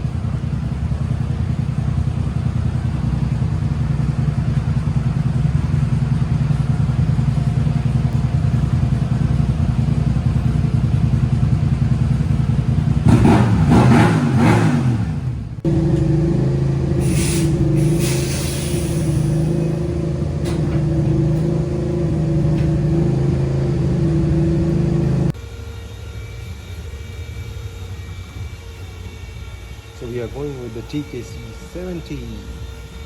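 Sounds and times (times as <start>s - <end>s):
motorcycle engine running: 0.0s - 25.4s.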